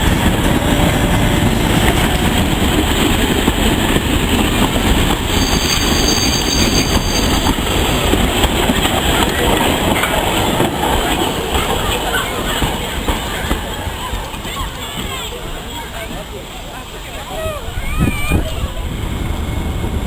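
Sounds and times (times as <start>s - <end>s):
train wheels on rails: 0.0s - 17.0s.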